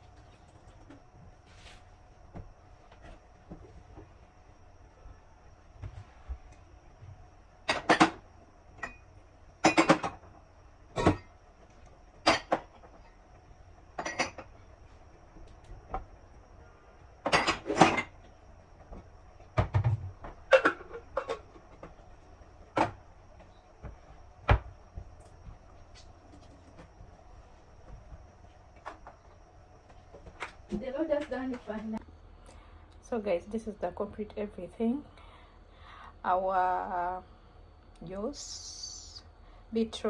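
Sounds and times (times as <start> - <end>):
faint steady hum: 0.0 - 40.0
dishes and cupboards knocking: 9.6 - 10.2, 11.0 - 11.3, 19.6 - 21.6.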